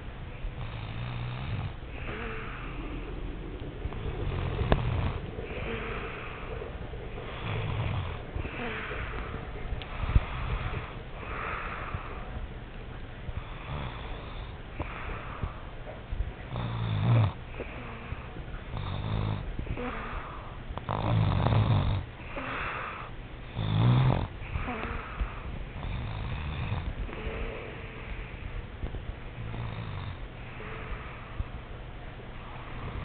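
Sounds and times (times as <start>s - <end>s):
person snoring: 0.6s - 12.3s, 13.4s - 15.6s, 16.5s - 28.1s.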